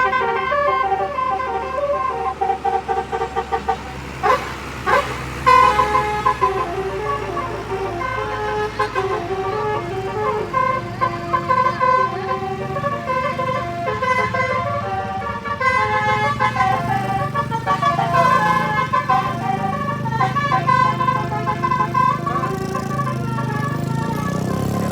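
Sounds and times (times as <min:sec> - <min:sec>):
low rumble of engines: 0:00.0 - 0:24.9
multi-tone musical bus horn: 0:00.0 - 0:24.9.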